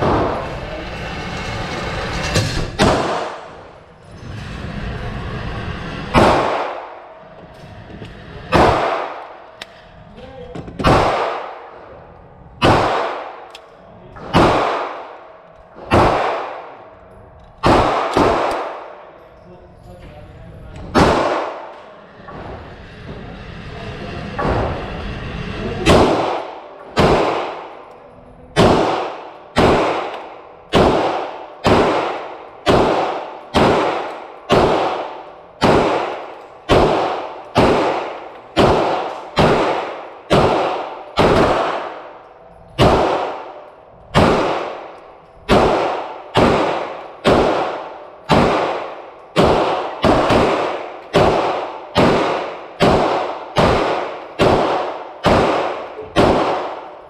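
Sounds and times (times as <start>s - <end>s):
pistol shots with ringing echo: 2.8s - 3.7s, 6.2s - 7.2s, 8.5s - 9.6s, 10.8s - 12.0s, 12.6s - 16.9s, 17.5s - 19.2s, 20.9s - 21.8s, 25.8s - 27.9s, 28.5s - 57.0s.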